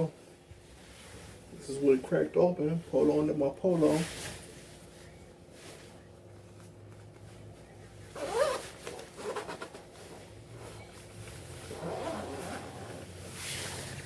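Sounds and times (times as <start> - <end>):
jacket zipper being pulled: 8.2 - 10.8, 11.6 - 14.0.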